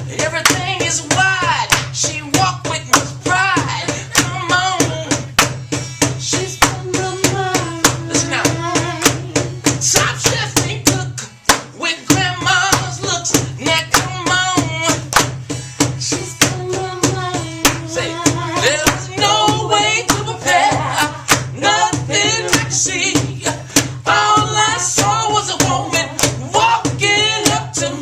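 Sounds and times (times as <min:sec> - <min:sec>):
man singing with vibrato: 0:00.0 - 0:14.9, 0:16.0 - 0:28.0
drum beat: 0:00.0 - 0:28.0
guitar: 0:00.0 - 0:28.0.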